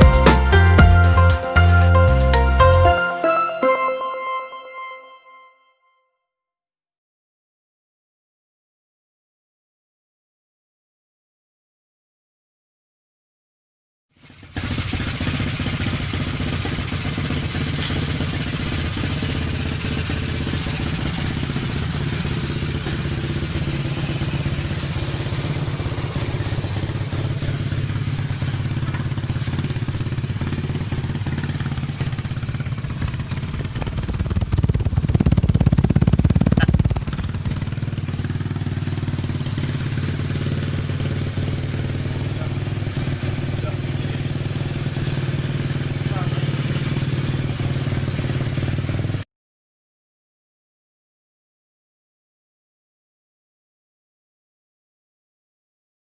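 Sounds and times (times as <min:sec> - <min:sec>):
engine revving: 0:00.0 - 0:02.9, 0:14.2 - 0:49.2
motorcycle engine idling: 0:00.0 - 0:02.9, 0:14.2 - 0:49.2.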